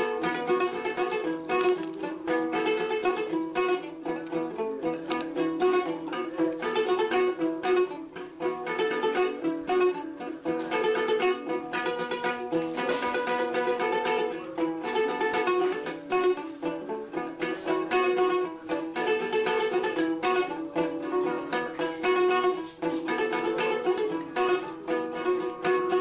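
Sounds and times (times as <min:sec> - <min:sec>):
plucked string instrument music: 0:00.0 - 0:26.0.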